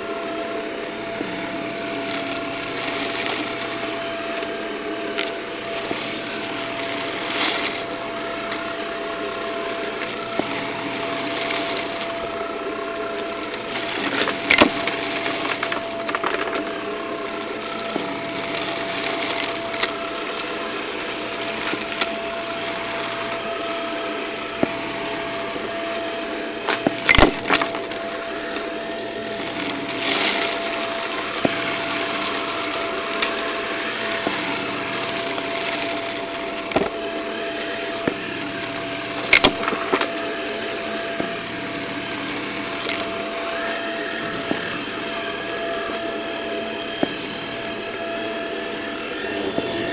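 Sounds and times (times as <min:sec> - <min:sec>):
debris crackling in vacuum: 0:00.0 - 0:49.9
vacuum cleaner whine: 0:00.0 - 0:49.9
sharp cracks: 0:05.0 - 0:41.2.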